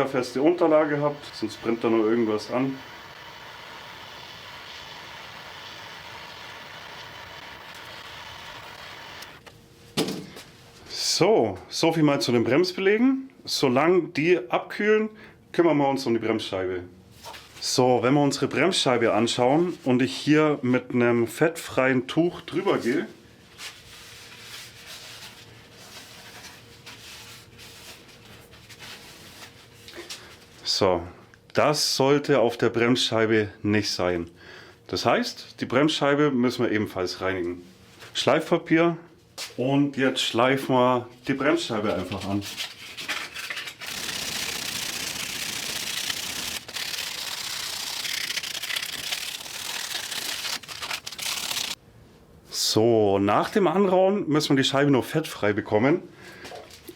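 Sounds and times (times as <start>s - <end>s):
cloth rubbing on metal rotor: 0.0s - 4.5s, 43.7s - 51.8s.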